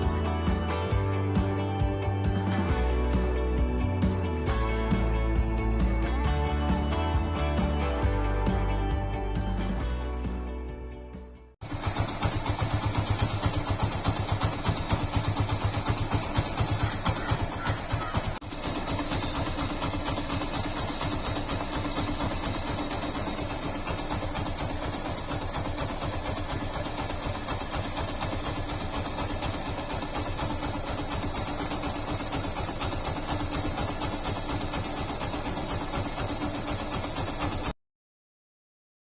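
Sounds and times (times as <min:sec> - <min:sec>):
motorcycle engine idling: 0:00.0 - 0:37.7.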